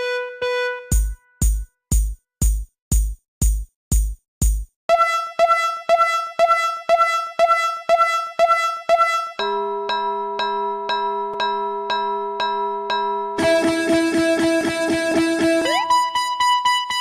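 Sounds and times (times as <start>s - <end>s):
electronic ding: 9.4s - 13.5s.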